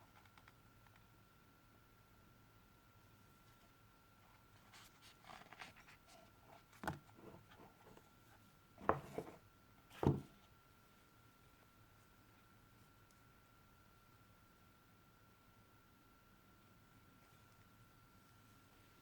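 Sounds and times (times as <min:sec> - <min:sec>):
sharp knocks on box: 0:10.0 - 0:10.3.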